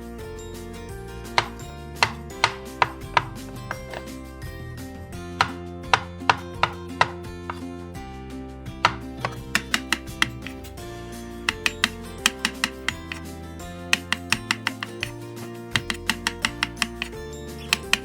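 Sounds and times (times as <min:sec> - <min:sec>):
background music: 0:00.0 - 0:18.0
knife chopping on cutting board: 0:09.5 - 0:10.8, 0:11.5 - 0:15.2, 0:15.8 - 0:18.0.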